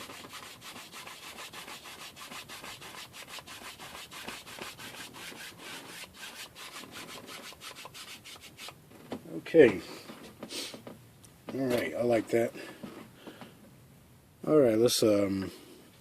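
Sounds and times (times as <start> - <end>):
paintbrush scrubbing canvas: 0.0 - 8.8.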